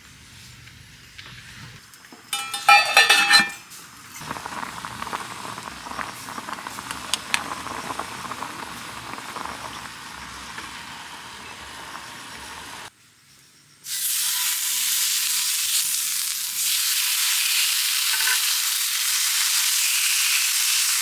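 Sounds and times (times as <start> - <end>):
loud ringing metal clatter: 2.4 - 3.6
food sizzling on griddle: 2.4 - 12.9, 13.8 - 21.0.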